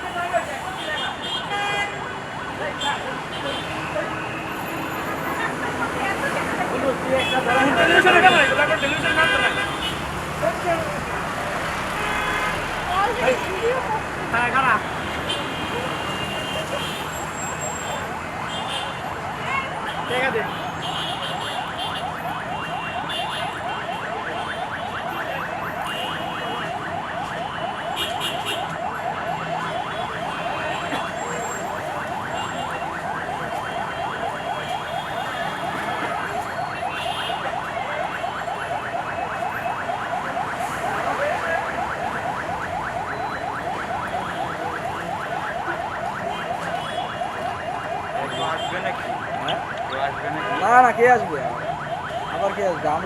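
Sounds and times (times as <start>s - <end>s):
pulsing electronic alarm: 0.0s - 53.0s
traffic noise: 0.0s - 53.0s.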